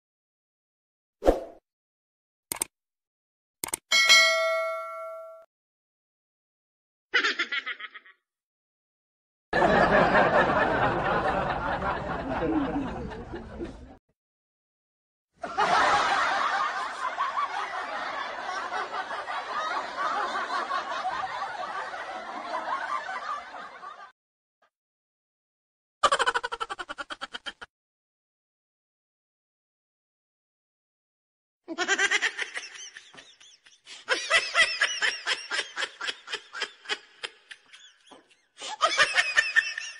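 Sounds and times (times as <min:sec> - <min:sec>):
laughter: 0:07.2 - 0:08.2, 0:09.5 - 0:14.0, 0:15.4 - 0:24.2, 0:26.0 - 0:27.7, 0:31.7 - 0:39.9
person laughing: 0:07.2 - 0:08.2, 0:26.0 - 0:27.7, 0:31.7 - 0:39.9.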